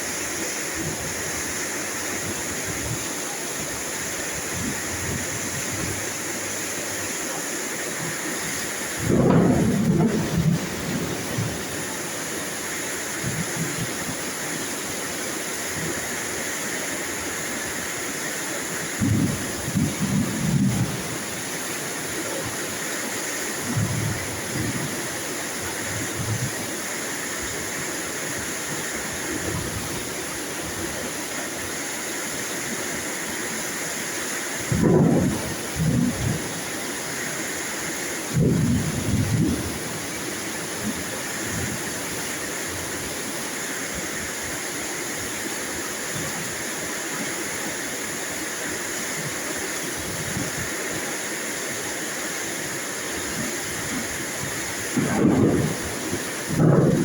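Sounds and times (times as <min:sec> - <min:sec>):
steady rain: 0:00.0 - 0:57.0
low thunder rumbles: 0:08.0 - 0:12.6, 0:18.9 - 0:21.5, 0:34.6 - 0:36.6, 0:38.3 - 0:41.9, 0:53.9 - 0:57.0.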